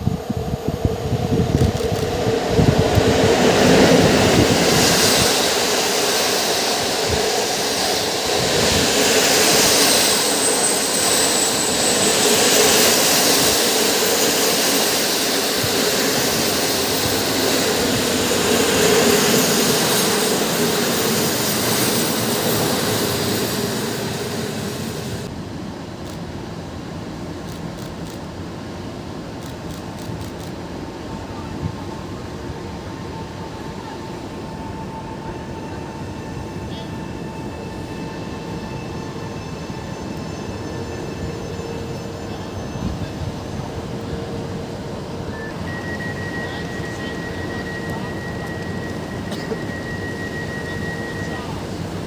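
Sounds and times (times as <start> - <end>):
train wheels rolling on rails: 0.0 - 25.3.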